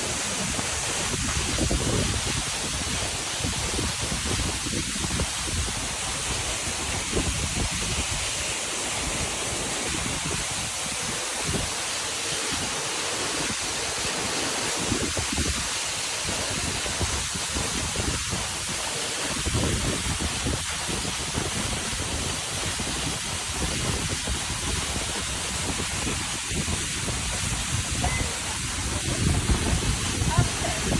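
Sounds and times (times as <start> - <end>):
water rushing: 0.0 - 30.9
wind buffeting microphone: 0.2 - 8.3, 19.4 - 30.9.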